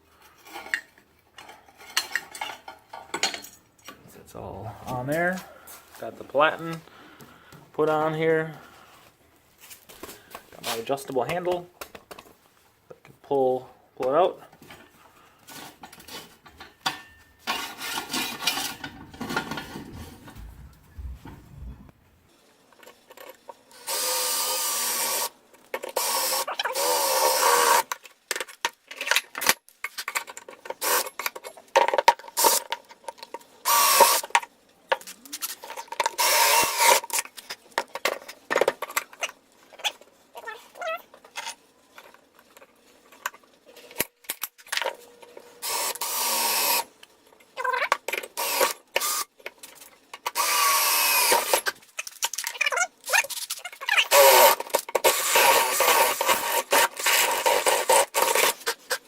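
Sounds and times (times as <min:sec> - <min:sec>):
metal parts clicking and knocking: 0:15.8 - 0:21.9
handheld power tool running: 0:36.2 - 0:37.0, 0:45.6 - 0:46.9, 0:48.4 - 0:49.2, 0:50.4 - 0:51.7, 0:54.1 - 0:58.5.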